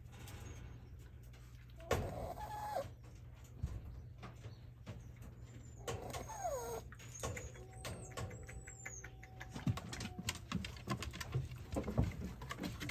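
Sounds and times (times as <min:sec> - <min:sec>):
puppy whining: 0:01.8 - 0:03.0, 0:05.5 - 0:11.3
puppy squeaking: 0:02.0 - 0:02.8, 0:05.7 - 0:10.0
light clicks and patters: 0:02.9 - 0:12.9.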